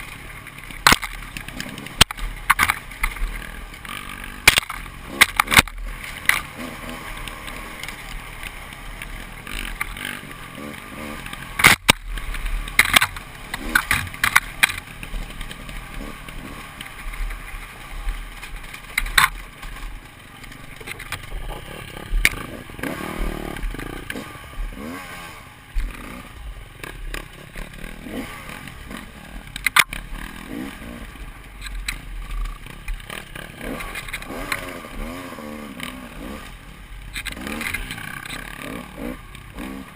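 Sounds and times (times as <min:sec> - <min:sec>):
sharp knocks and clatter: 0:00.0 - 0:24.3
dirt bike engine running: 0:00.0 - 0:39.9.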